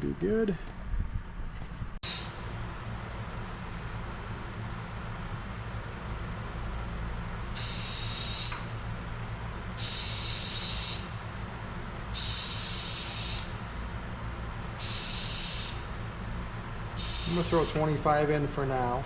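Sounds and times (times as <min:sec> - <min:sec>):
steady low hum: 0:00.0 - 0:19.0
compressed air hissing: 0:02.0 - 0:02.5, 0:07.6 - 0:08.6, 0:09.8 - 0:11.3, 0:12.2 - 0:13.7, 0:14.8 - 0:16.0, 0:16.9 - 0:17.8.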